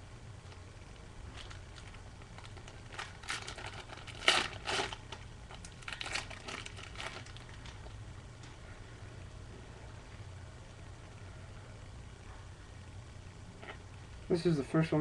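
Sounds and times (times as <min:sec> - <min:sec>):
wrapper crinkling: 0:01.3 - 0:08.0.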